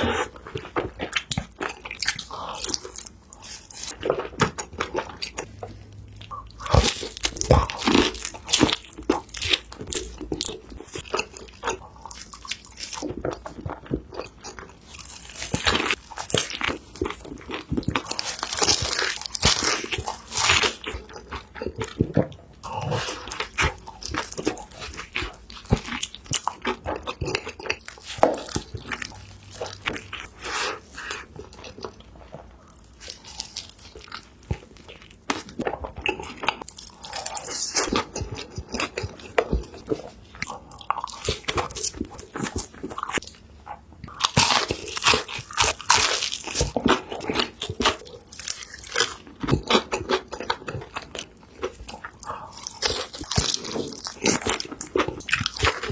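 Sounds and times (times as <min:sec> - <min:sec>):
crunchy bites and wet chewing: 0:00.0 - 0:55.9.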